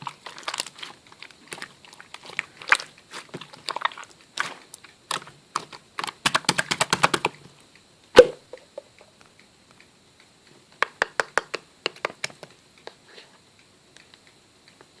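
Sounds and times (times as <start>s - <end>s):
faint ticks: 12.3s - 15.0s.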